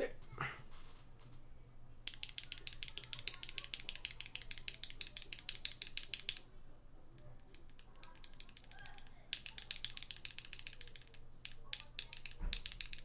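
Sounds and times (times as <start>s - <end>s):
mechanical keyboard keys clacking: 2.1s - 6.4s, 7.2s - 13.0s.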